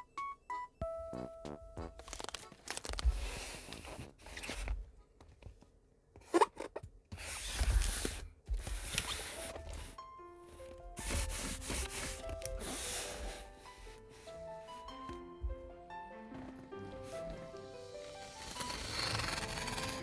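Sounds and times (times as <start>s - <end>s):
packaging tearing and crinkling: 2.0s - 4.7s, 18.2s - 20.0s.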